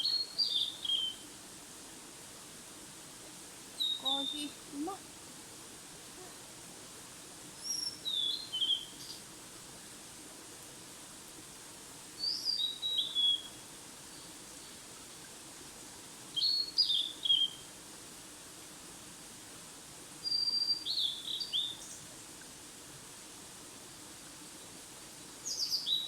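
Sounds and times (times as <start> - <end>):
songbird whistling: 3.8 - 4.5, 7.6 - 9.0, 12.2 - 13.5.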